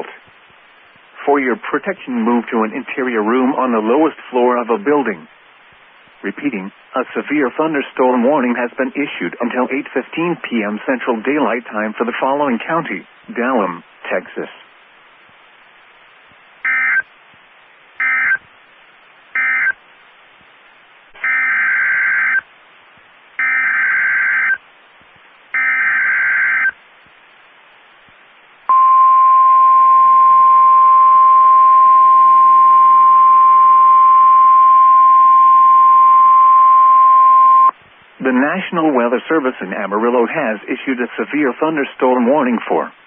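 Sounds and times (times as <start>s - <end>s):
steady alarm tone: 16.6s - 17.0s, 18.0s - 18.4s, 19.4s - 19.8s, 21.2s - 22.4s, 23.4s - 24.6s, 25.6s - 26.7s.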